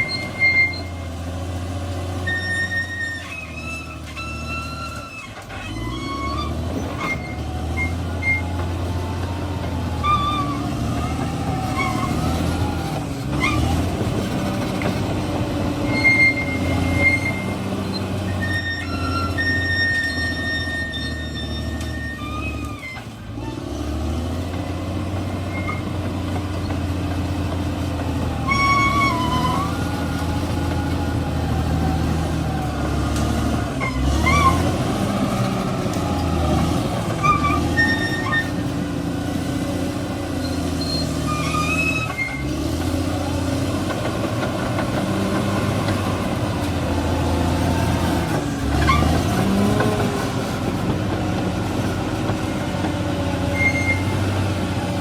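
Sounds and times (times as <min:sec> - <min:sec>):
short high squeaks: 0:00.0 - 0:01.3, 0:02.1 - 0:08.9, 0:09.8 - 0:13.9, 0:15.8 - 0:23.8, 0:25.4 - 0:27.0, 0:28.3 - 0:30.9, 0:33.4 - 0:38.8, 0:40.4 - 0:42.9, 0:47.7 - 0:50.3, 0:53.4 - 0:54.5
bulldozer diesel engine running: 0:00.0 - 0:55.0.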